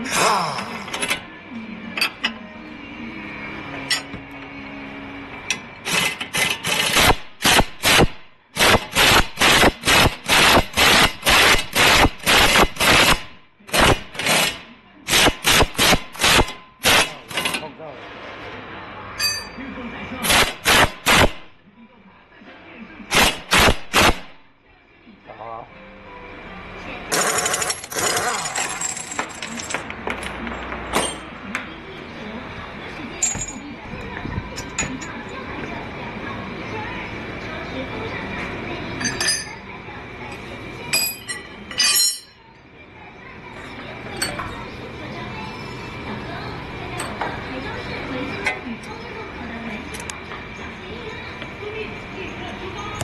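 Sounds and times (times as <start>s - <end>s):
metal tools clattering: 27.2s - 31.3s, 33.2s - 33.7s, 39.0s - 39.6s, 40.9s - 42.4s.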